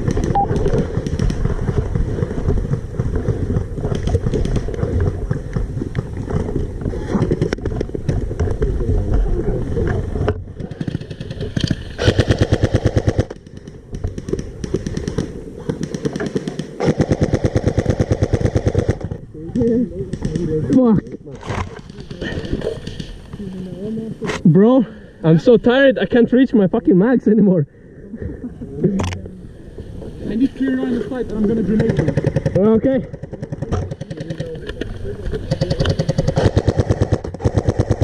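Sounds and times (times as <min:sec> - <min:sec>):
airsoft rifle full auto fire: 0:12.0 - 0:13.6, 0:14.2 - 0:19.1, 0:35.5 - 0:38.0.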